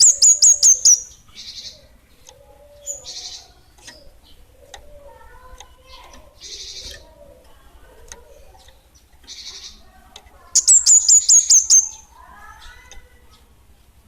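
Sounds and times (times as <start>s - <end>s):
songbird high sharp notes: 10.6s - 12.1s.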